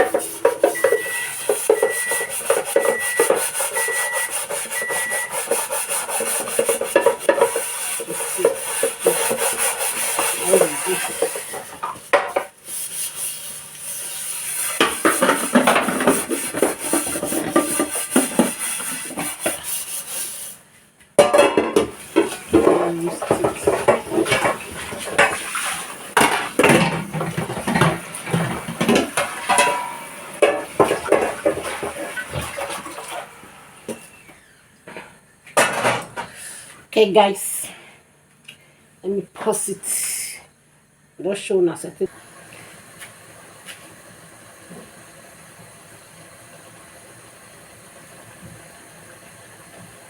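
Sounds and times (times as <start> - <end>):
pots and pans clattering: 0.0 - 12.6, 14.4 - 19.7, 21.2 - 33.3, 34.9 - 36.4.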